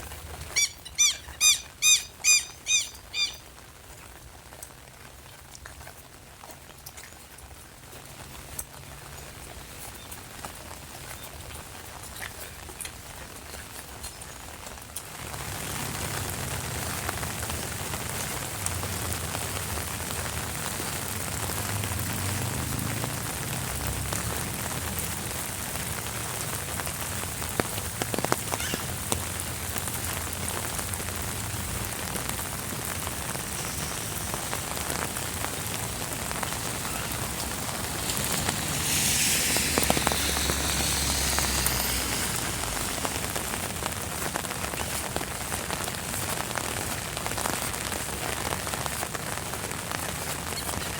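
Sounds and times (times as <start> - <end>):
rain falling: 0.0 - 50.9
rushing noise: 30.5 - 45.4.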